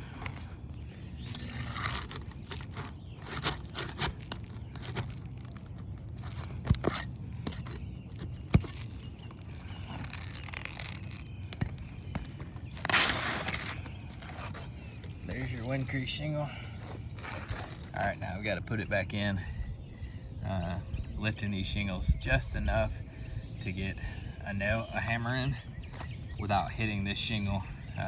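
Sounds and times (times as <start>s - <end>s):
roof shingles scraping: 1.2s - 18.0s.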